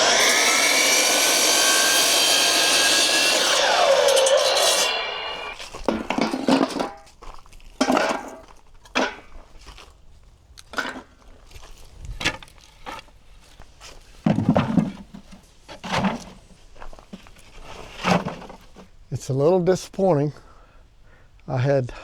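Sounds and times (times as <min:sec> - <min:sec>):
wooden knocks and clunks: 0:14.2 - 0:16.4.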